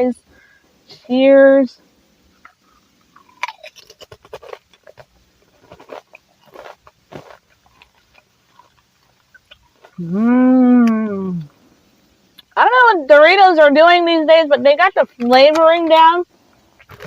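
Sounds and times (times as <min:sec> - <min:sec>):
chip crunching and chewing: 0:02.4 - 0:10.1, 0:16.8 - 0:17.0
person humming mmm: 0:10.0 - 0:11.5.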